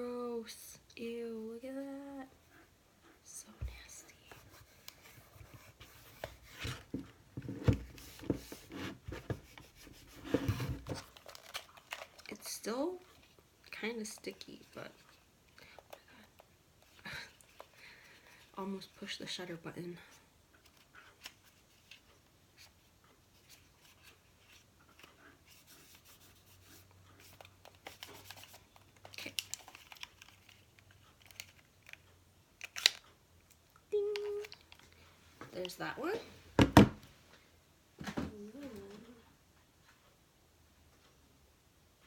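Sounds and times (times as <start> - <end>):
faint rubbing and scraping: 3.3 - 11.2.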